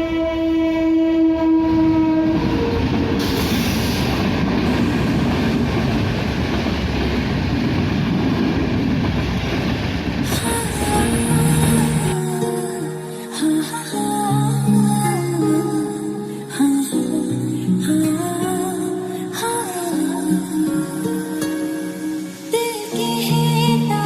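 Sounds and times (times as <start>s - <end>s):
music: 0.0s - 4.1s, 10.3s - 24.0s
train horn: 0.0s - 4.2s
train wheels rumbling on rails: 1.6s - 12.1s.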